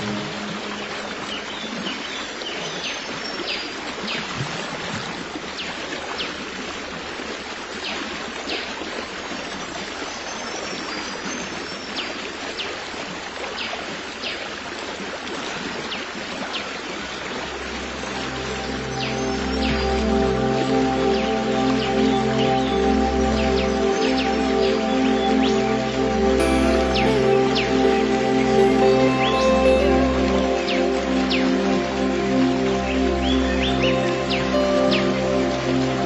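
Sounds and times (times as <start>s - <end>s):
soft sustained music: 0.0s - 3.7s, 16.9s - 36.0s
stream flowing: 0.0s - 36.0s.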